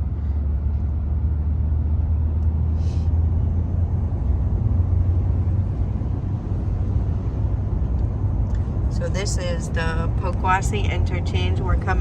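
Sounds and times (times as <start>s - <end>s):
car engine rumble: 0.0s - 12.0s
road noise inside car: 0.0s - 12.0s.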